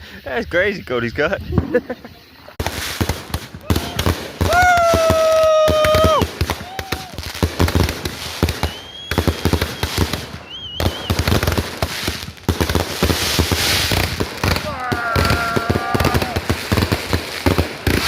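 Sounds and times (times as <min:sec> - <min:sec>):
firework whistles: 0:01.4 - 0:18.0
firecracker cracks and pops: 0:02.6 - 0:18.0
person shouting woo: 0:03.6 - 0:07.2, 0:14.6 - 0:16.5.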